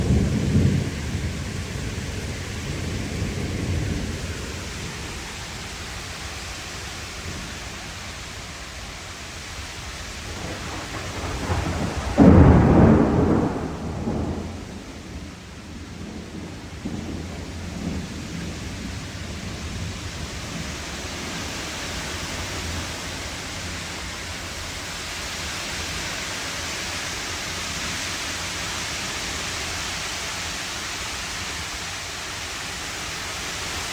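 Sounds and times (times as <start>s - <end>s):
loud thunderclap: 0.0s - 5.4s, 10.1s - 20.7s
low rolling thunder: 0.0s - 26.2s
heavy rain: 0.0s - 33.9s.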